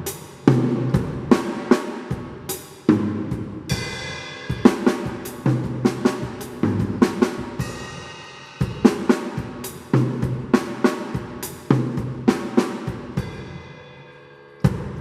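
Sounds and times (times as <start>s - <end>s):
snare and tom strikes: 0.0s - 13.4s
bass drum: 2.2s - 13.5s
cymbal crash: 3.7s - 9.8s, 12.7s - 15.0s.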